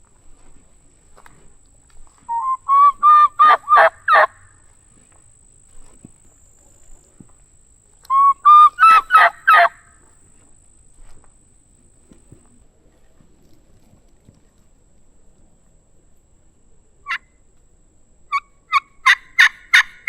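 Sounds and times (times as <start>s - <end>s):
turkey yelping: 2.3s - 4.5s, 8.1s - 9.9s, 18.3s - 20.0s.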